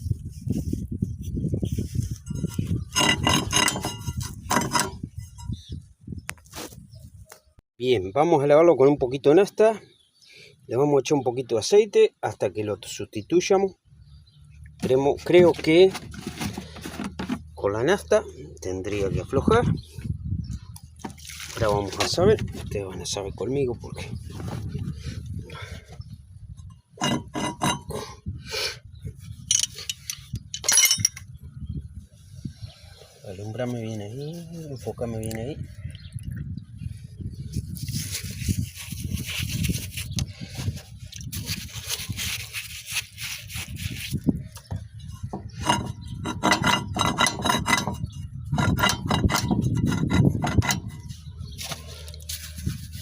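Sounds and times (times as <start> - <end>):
ball bearing rattling: 2.3 - 5.6, 29.5 - 31.3, 45.3 - 51.1
sharp metallic clinks and knocks: 2.3 - 5.6, 29.5 - 31.3.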